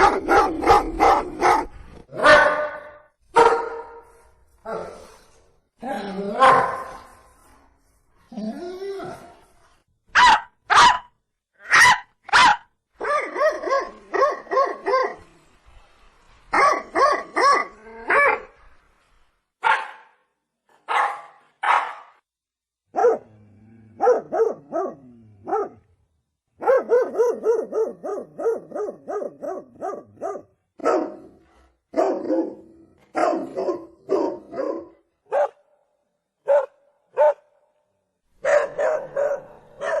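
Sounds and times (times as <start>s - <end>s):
dog barking: 0.0s - 4.0s, 6.4s - 7.0s, 10.2s - 15.2s, 16.5s - 18.5s, 19.6s - 20.2s, 20.8s - 22.2s, 22.9s - 23.3s, 24.0s - 25.8s, 26.6s - 35.6s, 36.4s - 37.5s, 38.4s - 40.0s.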